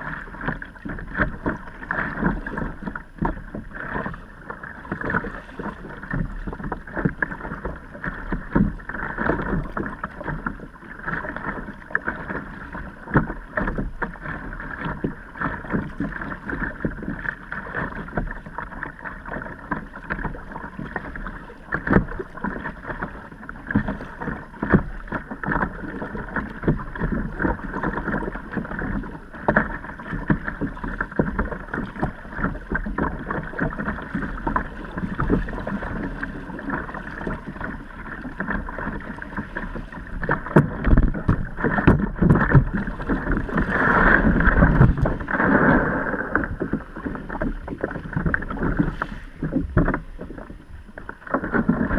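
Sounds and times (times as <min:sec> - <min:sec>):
water splashing around a kayak: 0:00.0 - 0:51.9
wind on microphone: 0:19.5 - 0:51.9
knocks on a kayak: 0:40.2 - 0:45.8.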